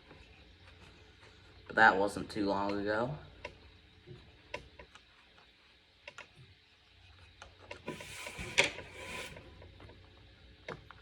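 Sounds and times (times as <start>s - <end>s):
rustling or scraping: 7.8s - 9.6s.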